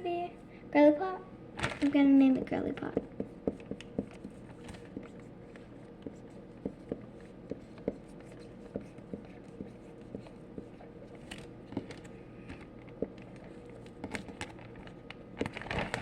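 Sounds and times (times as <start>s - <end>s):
room hum: 0.0s - 16.0s
pen scratching on paper: 3.5s - 11.2s.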